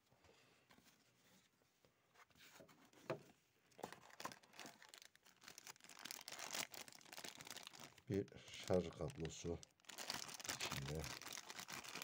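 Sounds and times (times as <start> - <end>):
plastic packaging crinkling: 3.7 - 12.0.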